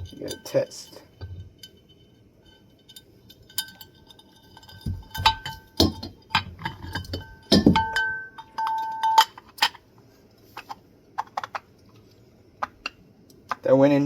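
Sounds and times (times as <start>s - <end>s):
metal ringing tone: 0.0s - 9.4s
metal parts clinking and knocking: 0.0s - 9.8s, 10.6s - 11.7s.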